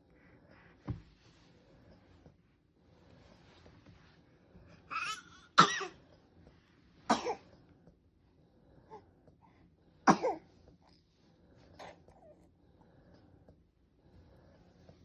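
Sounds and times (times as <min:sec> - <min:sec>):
cat coughing: 0:04.9 - 0:06.0, 0:07.1 - 0:07.4, 0:10.1 - 0:10.4.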